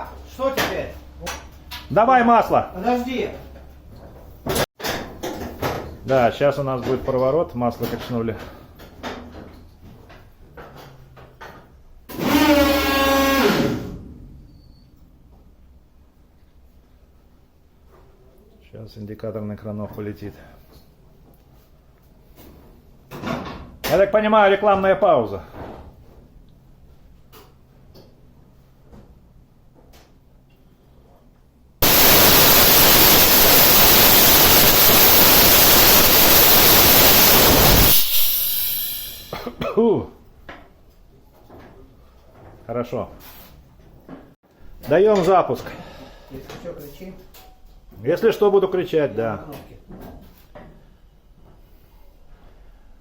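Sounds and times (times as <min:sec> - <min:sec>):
horn-like blast: 0:12.1 - 0:14.0, 0:31.8 - 0:39.4
loud even hiss: 0:31.8 - 0:39.5.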